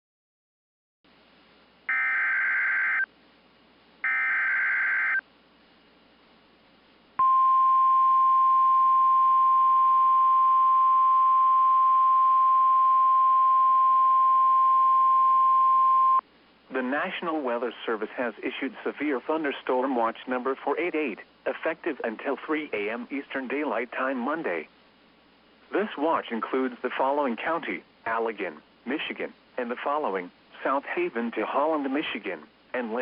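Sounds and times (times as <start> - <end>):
radio hiss: 16.7 - 24.8, 25.6 - 33.0.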